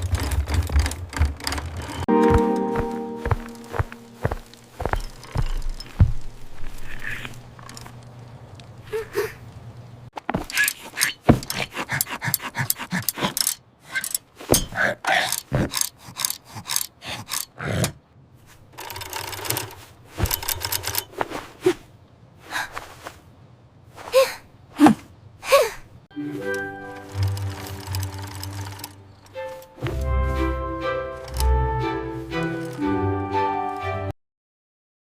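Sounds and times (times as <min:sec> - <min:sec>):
person gasping and grunting: 0:11.5 - 0:18.0, 0:24.0 - 0:25.9.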